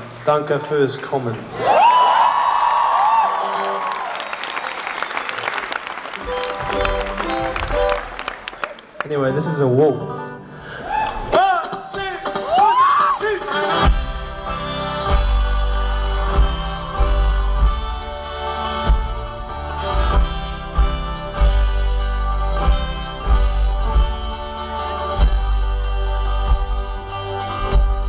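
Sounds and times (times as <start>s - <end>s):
folk-rock band playing waltz: 6.2s - 8.3s, 11.6s - 28.0s.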